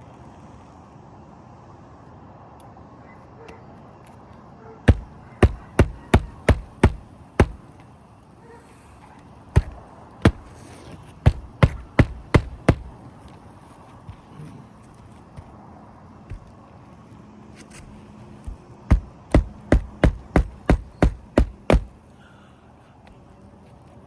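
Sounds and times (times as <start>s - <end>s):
hatchet striking roofing nails: 4.9s - 7.8s, 9.6s - 13.1s, 18.4s - 22.0s.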